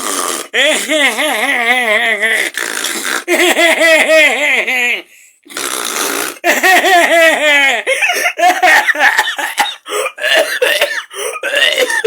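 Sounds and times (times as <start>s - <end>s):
breathy gasp: 5.0s - 5.5s, 7.9s - 8.4s, 9.8s - 12.0s
person laughing hard: 6.4s - 9.9s.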